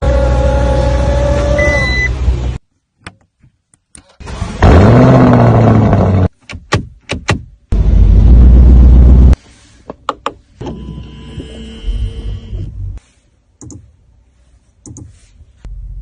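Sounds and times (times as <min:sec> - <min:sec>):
car engine revving: 0:04.3 - 0:06.3
loud low rumble: 0:07.7 - 0:09.4.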